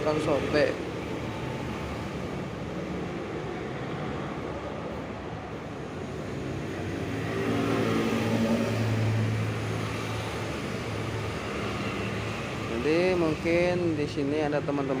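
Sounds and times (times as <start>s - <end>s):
vehicle engine passing by: 6.4s - 13.4s.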